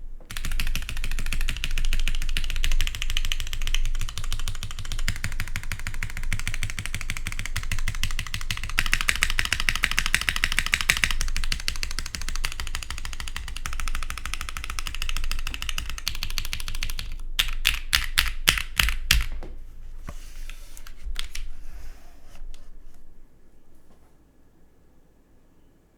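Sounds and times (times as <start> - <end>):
fast typing on mechanical keyboard: 0.3 - 19.3.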